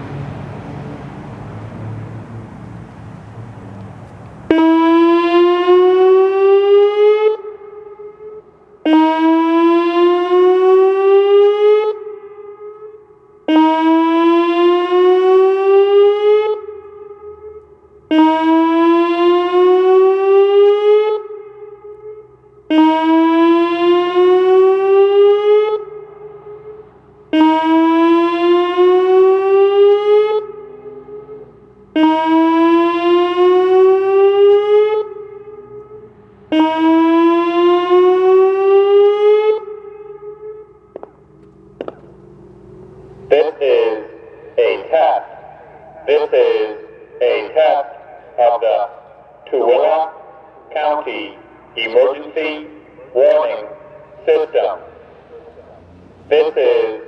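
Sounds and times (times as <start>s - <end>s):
warning siren whoop: 4.5s - 41.0s.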